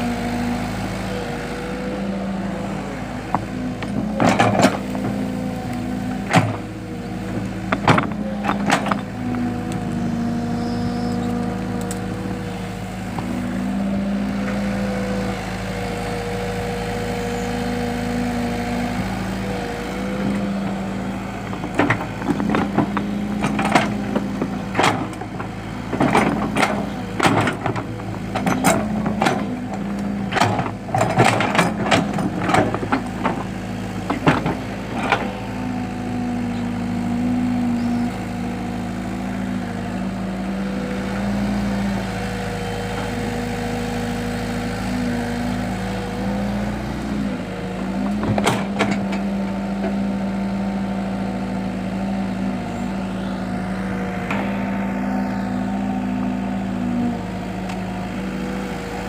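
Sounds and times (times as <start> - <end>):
diesel engine running: 0.0 - 59.0
sharp knocks and clanks: 6.2 - 9.2, 21.4 - 35.4.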